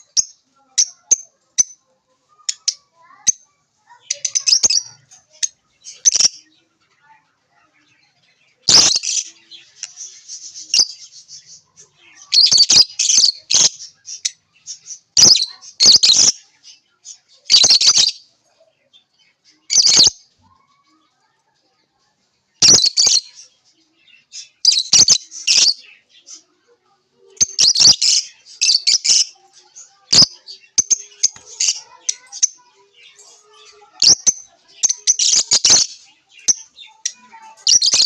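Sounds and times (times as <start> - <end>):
lovebirds chirping: 0.0 - 38.0.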